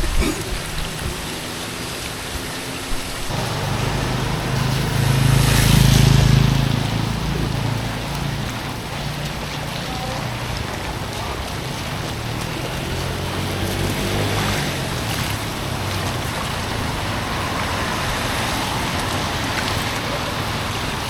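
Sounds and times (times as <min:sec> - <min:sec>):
low engine hum: 0:00.0 - 0:21.0
rushing water: 0:00.0 - 0:21.0.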